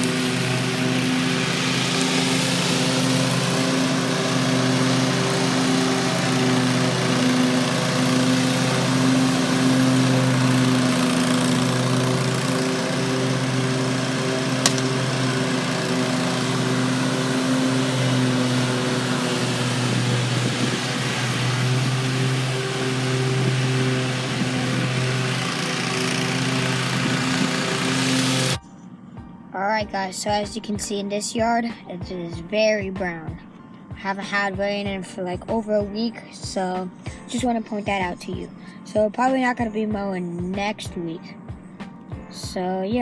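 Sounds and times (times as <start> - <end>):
mower engine running: 0.0 - 28.6
sharp click: 14.6 - 14.9.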